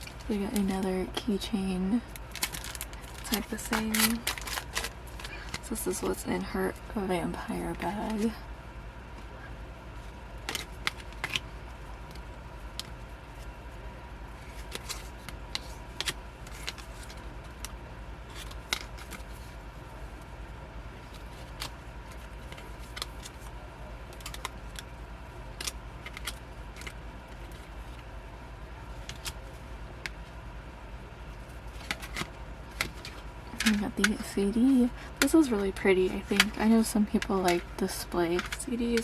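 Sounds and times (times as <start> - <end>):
plastic and paper items clicking: 0.0 - 0.9, 2.1 - 6.2, 10.4 - 12.2, 14.4 - 19.5, 21.0 - 23.5, 24.1 - 24.9, 25.6 - 28.0, 31.7 - 39.0
steady low hum: 0.0 - 39.0.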